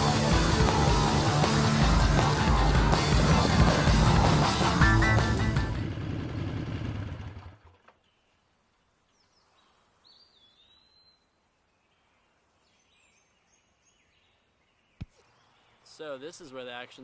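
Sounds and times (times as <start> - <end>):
background music: 0.0 - 5.9
faint bird chirps: 7.9 - 16.1.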